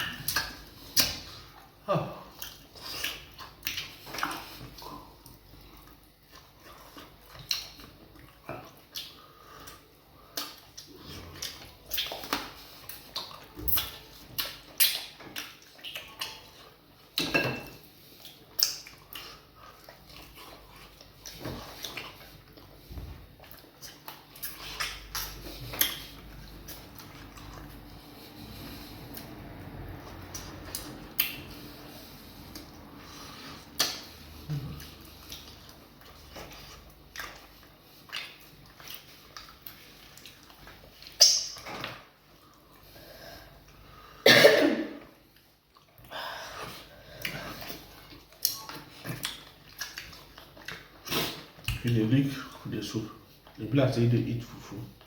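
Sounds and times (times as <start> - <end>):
wet chewing: 0.0 - 17.2, 17.8 - 43.0, 45.2 - 52.6
lip smacks: 8.5 - 16.4, 18.2 - 20.3, 23.4 - 29.4, 30.2 - 42.0
dishes clinking: 17.2 - 17.8.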